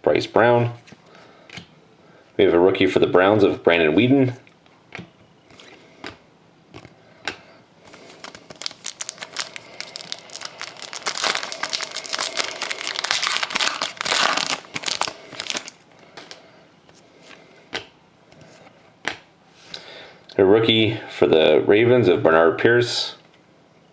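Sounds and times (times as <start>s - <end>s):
foil wrapper tearing and crinkling: 7.9s - 16.4s.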